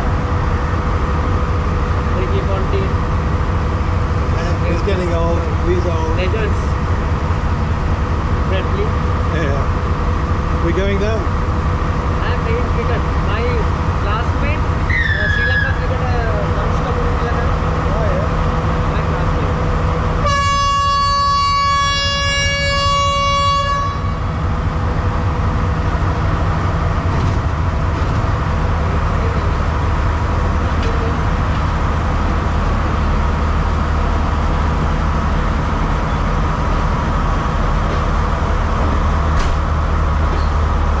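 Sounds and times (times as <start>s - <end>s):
diesel locomotive rumble: 0.0s - 41.0s
train horn blast: 20.2s - 24.4s.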